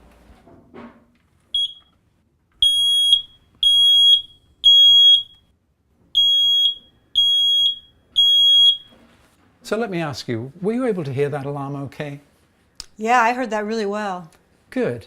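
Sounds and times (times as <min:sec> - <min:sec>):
smoke alarm beeping: 0:01.5 - 0:02.0, 0:02.6 - 0:05.5, 0:06.1 - 0:09.0.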